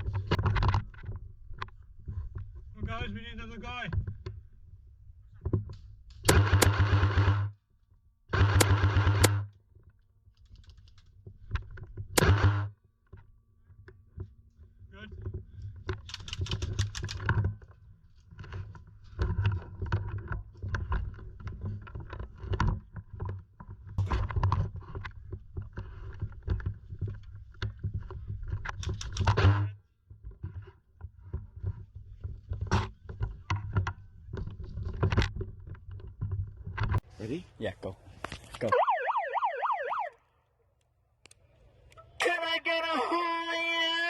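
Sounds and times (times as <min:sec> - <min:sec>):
sharp clicks and rattles: 0:10.3 - 0:12.0, 0:15.3 - 0:17.8, 0:28.4 - 0:29.4.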